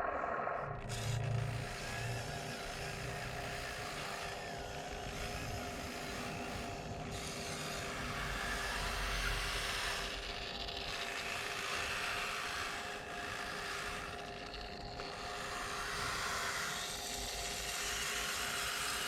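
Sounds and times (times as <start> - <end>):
hydraulic pump whine and hum: 0.0 - 16.1.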